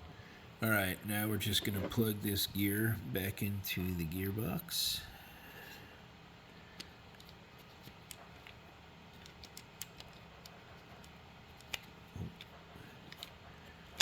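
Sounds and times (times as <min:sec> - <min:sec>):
plastic parts clicking and tapping: 0:06.8 - 0:13.4.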